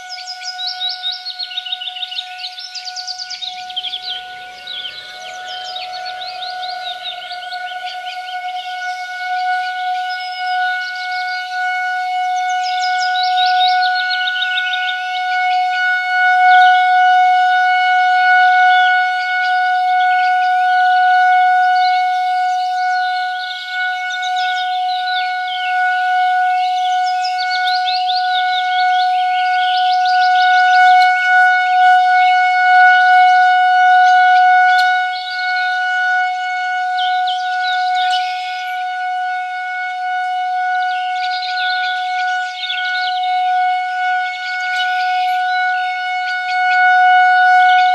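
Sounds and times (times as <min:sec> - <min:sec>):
bird-like chirps: 0:00.0 - 0:11.5, 0:37.0 - 0:38.8
birds chirping: 0:00.0 - 0:47.9
steady siren tone: 0:00.0 - 0:47.9.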